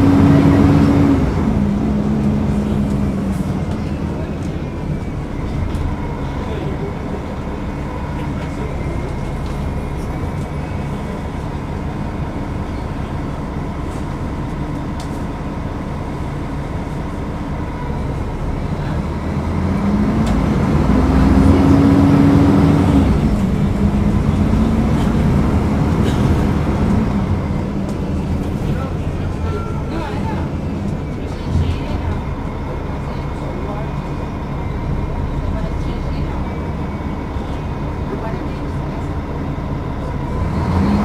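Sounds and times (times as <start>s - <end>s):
bus engine running: 0.0s - 41.0s.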